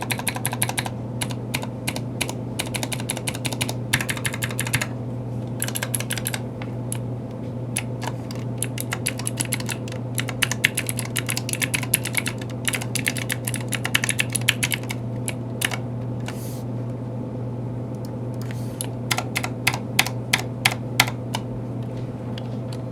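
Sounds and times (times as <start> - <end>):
clicky keyboard typing: 0.0 - 4.9, 5.6 - 7.0, 7.8 - 15.8, 18.0 - 21.5.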